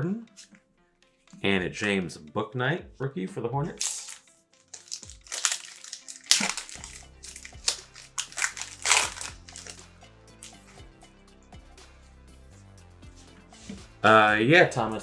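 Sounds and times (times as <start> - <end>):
quiet background music: 0.0 - 15.0
cards and foil wrapper crinkling: 3.8 - 10.6.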